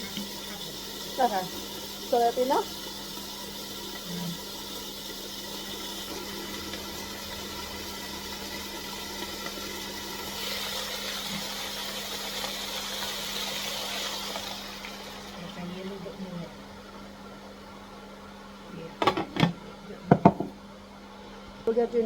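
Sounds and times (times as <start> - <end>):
hiss: 0.0 - 15.3
mechanical hum: 0.0 - 22.0.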